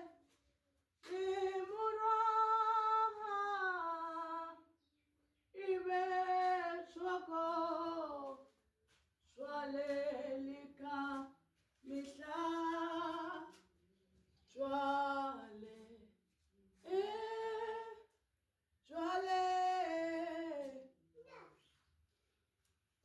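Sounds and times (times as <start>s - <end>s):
woman singing unaccompanied: 0.0s - 0.3s, 1.0s - 4.7s, 5.5s - 8.5s, 9.3s - 13.7s, 14.4s - 16.2s, 16.8s - 18.2s, 18.8s - 20.9s.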